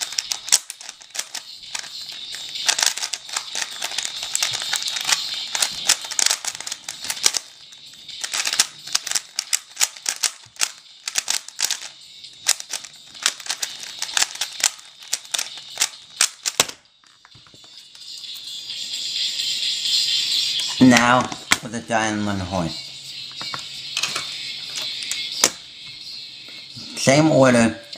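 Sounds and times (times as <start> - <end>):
puzzle cube clicking: 0.0 - 16.8.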